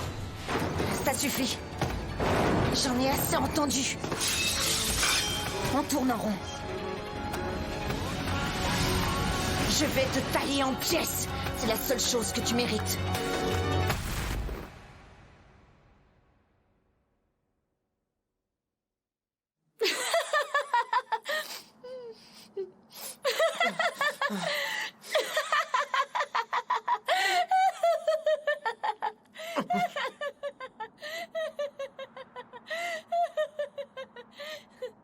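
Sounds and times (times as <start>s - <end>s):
young woman laughing: 19.8s - 35.0s.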